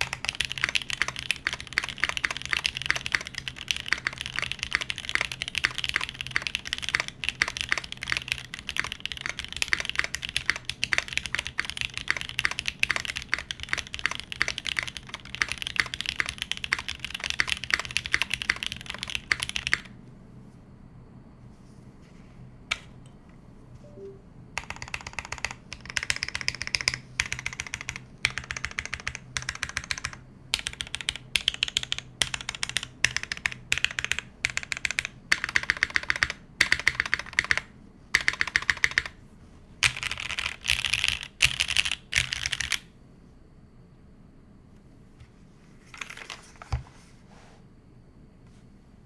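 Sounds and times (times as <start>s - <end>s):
typing on mechanical keyboard: 0.0s - 19.9s, 24.6s - 39.2s, 39.8s - 42.9s.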